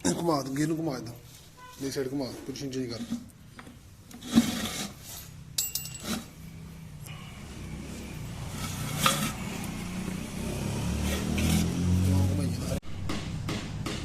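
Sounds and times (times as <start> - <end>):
short metallic ring: 5.6 - 6.4.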